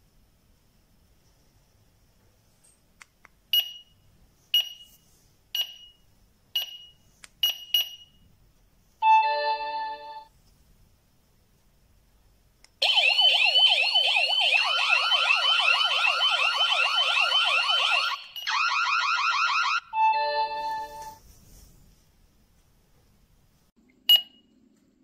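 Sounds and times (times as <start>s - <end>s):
alarm siren rising sweeps: 12.8s - 19.9s.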